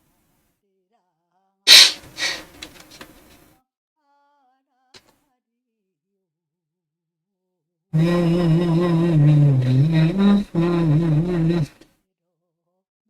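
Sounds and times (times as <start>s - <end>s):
person sneezing: 1.7s - 2.5s.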